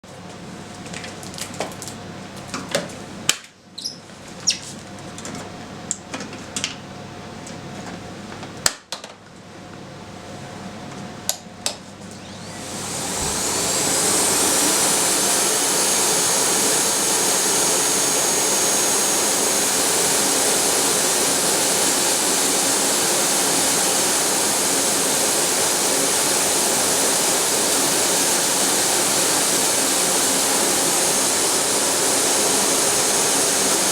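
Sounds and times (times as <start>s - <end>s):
vacuum cleaner running: 11.9s - 33.9s.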